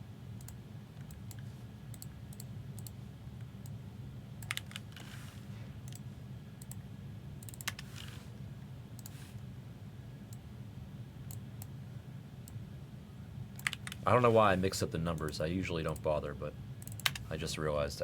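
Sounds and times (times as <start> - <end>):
steady low hum: 0.0 - 18.0
computer mouse and key clicks: 0.4 - 3.8, 4.4 - 6.8, 7.4 - 8.3, 9.0 - 9.4, 13.6 - 14.0, 16.8 - 17.3.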